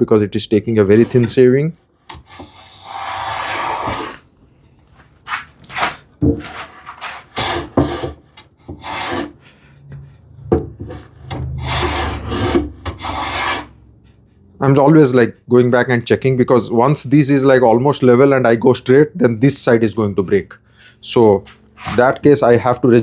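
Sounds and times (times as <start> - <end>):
hand plane shaving wood: 0.9 - 1.4, 2.1 - 4.2, 5.3 - 9.4, 10.9 - 13.8, 21.4 - 22.3.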